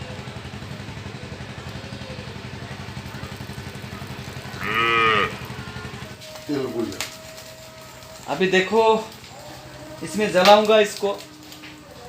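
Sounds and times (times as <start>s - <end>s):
small engine idling: 0.0s - 12.0s
animal call: 4.6s - 5.6s.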